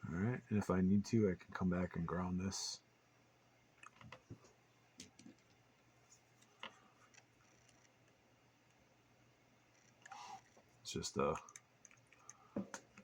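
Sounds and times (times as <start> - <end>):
faint clicks and taps of tools: 11.3 - 13.0.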